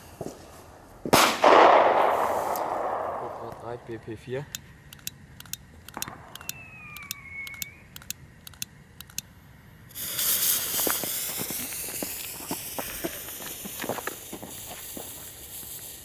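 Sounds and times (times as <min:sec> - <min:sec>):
firework hissing and crackling: 0:00.0 - 0:03.5, 0:09.3 - 0:16.0
distant firecrackers popping: 0:00.1 - 0:04.0, 0:05.7 - 0:07.8, 0:09.9 - 0:16.0
faint descending whistle: 0:06.3 - 0:08.0.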